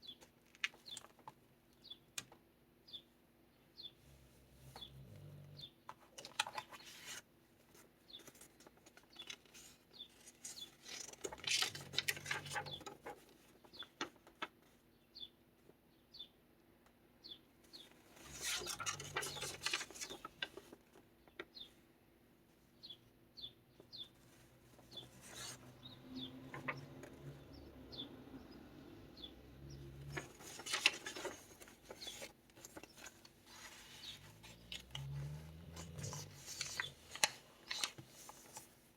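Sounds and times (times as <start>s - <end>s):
paper pages rustling: 6.2s - 14.5s, 18.2s - 20.9s, 24.2s - 25.7s, 30.1s - 38.9s.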